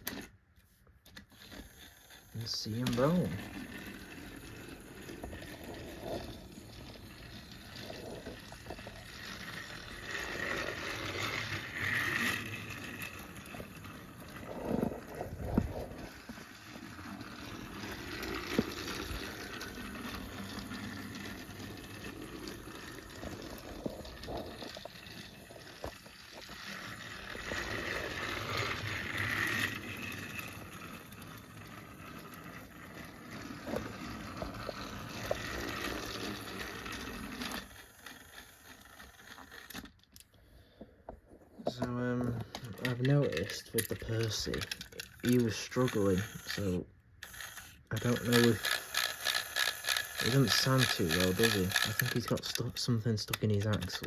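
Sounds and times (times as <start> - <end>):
toy train motor whirring: 1.0 - 40.4, 41.8 - 54.0
toy train wheels clattering: 1.1 - 40.2, 41.7 - 54.0.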